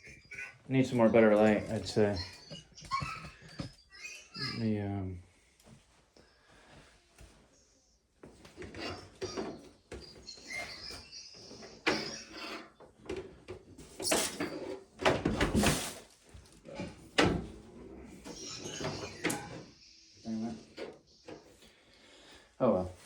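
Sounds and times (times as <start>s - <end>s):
packaging rustling and scraping: 15.5s - 16.6s.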